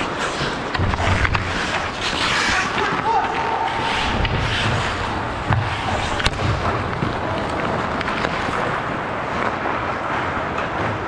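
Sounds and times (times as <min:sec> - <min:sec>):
sharp knocks: 0:00.0 - 0:08.3
steady noise: 0:00.0 - 0:09.4.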